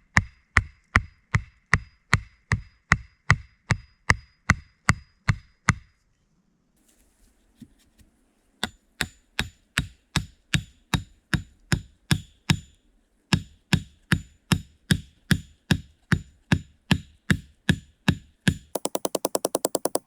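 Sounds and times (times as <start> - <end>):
tool chopping wood: 18.5 - 20.0.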